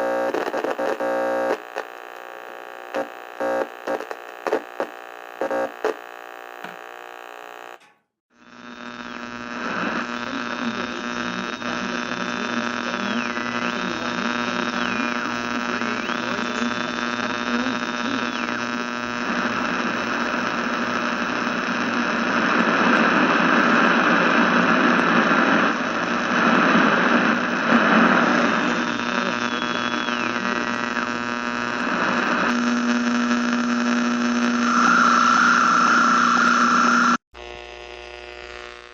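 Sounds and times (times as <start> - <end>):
radio static crackle: 0.0 - 7.8, 8.4 - 38.9
radio static hiss: 0.0 - 7.8, 8.4 - 38.9
high whistles in static: 8.4 - 37.2
steady hum: 8.5 - 38.6.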